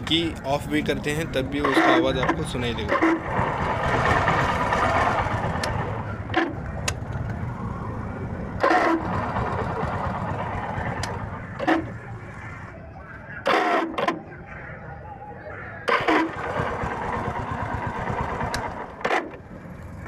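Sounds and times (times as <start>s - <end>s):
motorcycle starter rasping: 0.8s - 7.5s, 8.6s - 12.4s, 15.8s - 20.0s.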